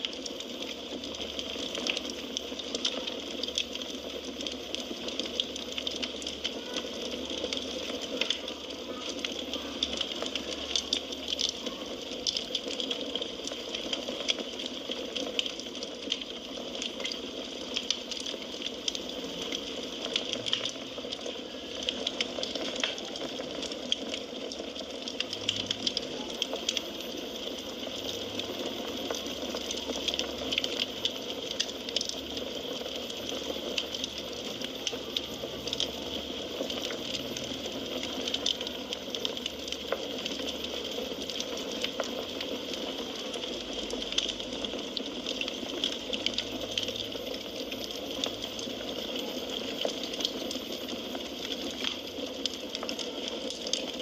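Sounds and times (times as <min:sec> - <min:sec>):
firewood crackling and popping: 0:00.0 - 0:54.0.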